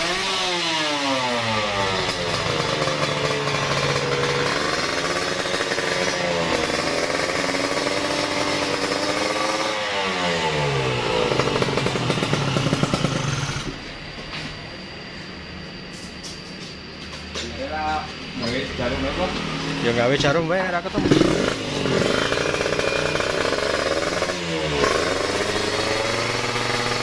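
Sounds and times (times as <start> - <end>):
two-stroke engine revving: 0.0 - 13.8, 19.2 - 27.0.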